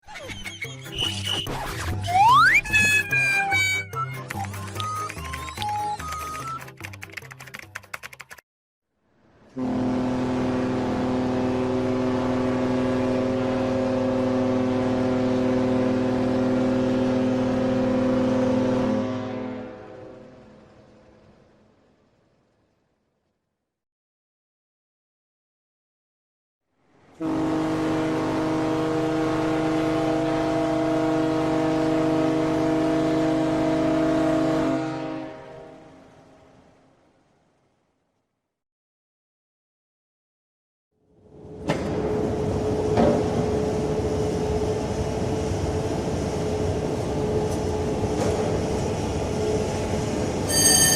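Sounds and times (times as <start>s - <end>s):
ship engine droning: 9.2s - 22.4s, 26.9s - 37.4s, 41.1s - 50.9s.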